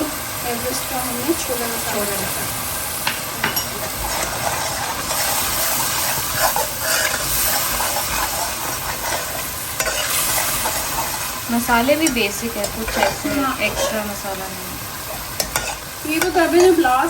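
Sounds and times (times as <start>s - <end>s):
sauce sizzling in oil: 0.0s - 17.0s
spoon scraping a pan: 3.4s - 17.0s.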